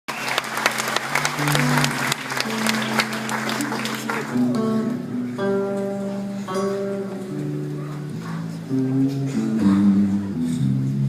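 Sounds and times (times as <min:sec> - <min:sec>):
audience applause: 0:00.1 - 0:05.0
guitar picking slow notes: 0:00.4 - 0:11.0.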